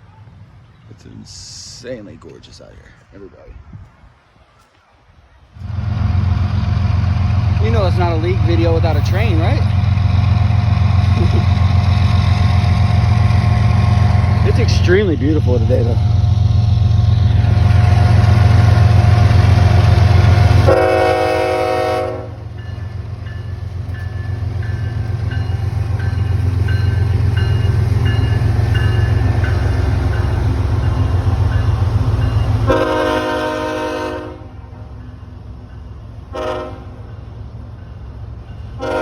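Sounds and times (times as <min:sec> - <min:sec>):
locomotive rumbling: 0:00.0 - 0:39.0
train horn blasts: 0:20.2 - 0:22.7, 0:32.6 - 0:34.8, 0:36.3 - 0:37.1, 0:38.8 - 0:39.0.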